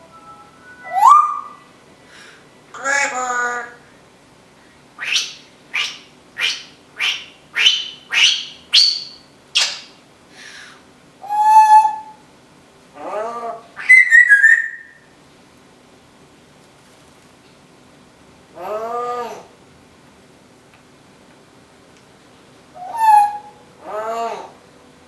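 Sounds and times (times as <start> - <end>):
parrot calls: 0.0 - 1.7, 2.8 - 3.9, 5.0 - 9.9, 13.0 - 15.0, 18.6 - 19.6, 22.8 - 24.6
parrot whistling: 0.0 - 1.7, 5.0 - 9.8, 11.2 - 12.2, 13.8 - 15.0, 22.8 - 23.6.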